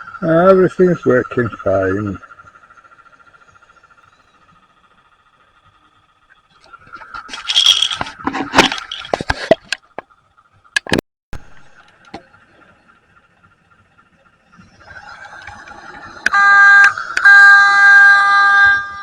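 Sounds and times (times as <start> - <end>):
faint steady whine: 0.0 - 19.0
scraping and rustling: 6.8 - 10.0.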